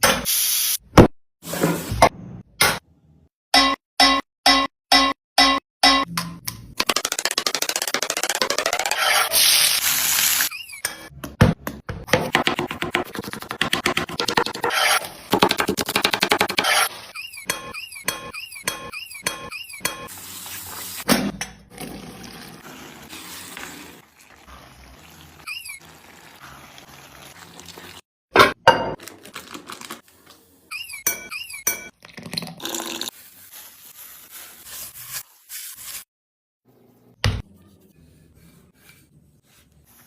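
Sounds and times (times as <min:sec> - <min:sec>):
high repeated chirping squeaks: 0:10.4 - 0:11.1, 0:16.7 - 0:20.1, 0:25.4 - 0:25.8, 0:30.7 - 0:31.8.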